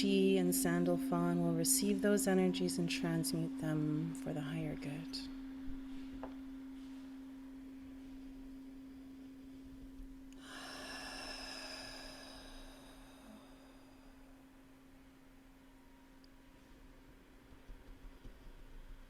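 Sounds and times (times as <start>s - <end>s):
tuning fork ringing: 0.0s - 10.6s.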